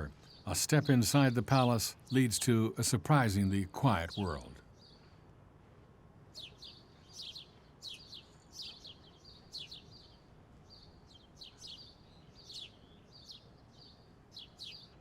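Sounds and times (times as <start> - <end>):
birds chirping: 0.0 - 5.2, 6.3 - 15.0
faint distant city traffic hum: 0.0 - 15.0.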